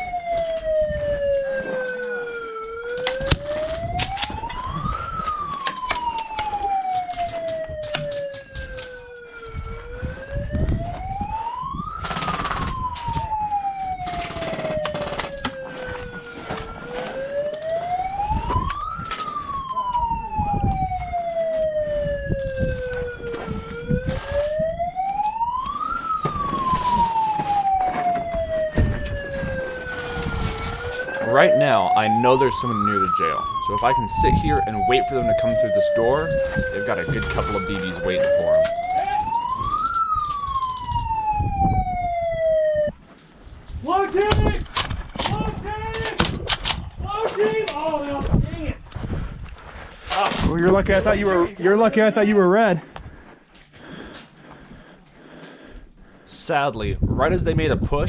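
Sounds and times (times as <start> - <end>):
siren wailing: 30.4 - 39.2.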